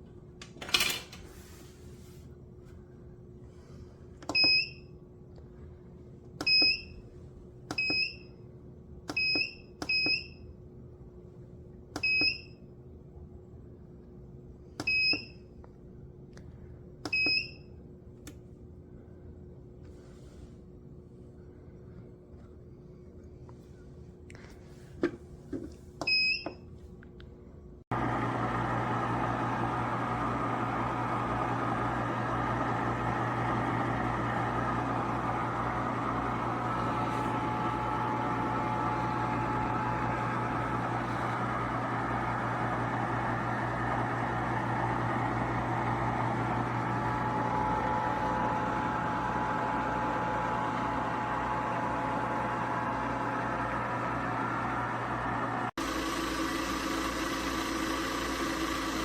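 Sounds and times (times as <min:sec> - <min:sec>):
ice cream maker beep: 0:04.3 - 0:04.9, 0:06.4 - 0:07.0, 0:07.8 - 0:08.4, 0:09.1 - 0:10.5, 0:12.0 - 0:12.6, 0:14.8 - 0:15.4, 0:17.1 - 0:17.7, 0:26.1 - 0:26.6, 0:28.0 - 0:59.0
ice cream maker motor humming: 0:27.9 - 0:59.0.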